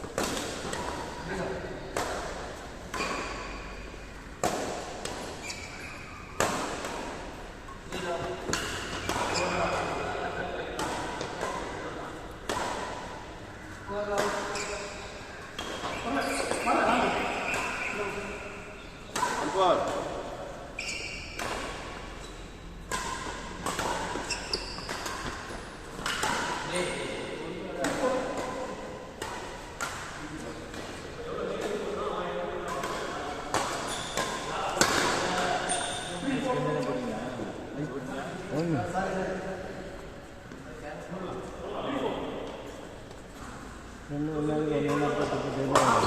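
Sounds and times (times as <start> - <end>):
badminton racket hitting shuttlecock: 0.0 - 1.2, 1.8 - 10.0, 22.8 - 27.0
racket hitting shuttlecock: 0.0 - 36.1, 44.9 - 46.0.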